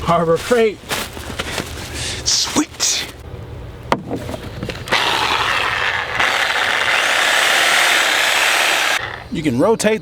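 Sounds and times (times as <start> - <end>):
reciprocating saw whirring: 4.9 - 9.5.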